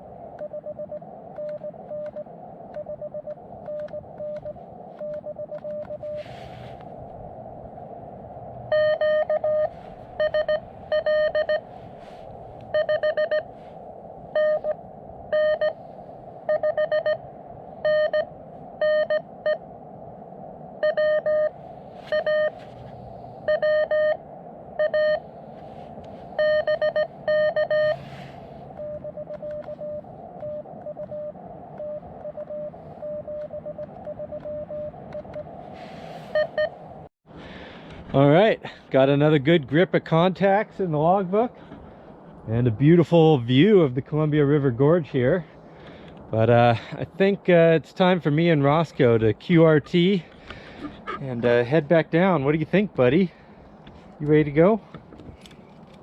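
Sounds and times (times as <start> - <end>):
radio receiver hiss: 0.0 - 37.1
morse code beeps: 0.4 - 6.2, 8.7 - 11.7, 12.7 - 13.5, 14.4 - 15.8, 16.5 - 17.2, 17.8 - 19.6, 20.8 - 22.6, 23.4 - 24.2, 24.8 - 25.3, 26.4 - 28.1, 28.7 - 35.5, 36.3 - 36.8
faint keyed morse tone: 8.7 - 11.7, 12.7 - 13.5, 14.4 - 15.8, 26.4 - 28.0.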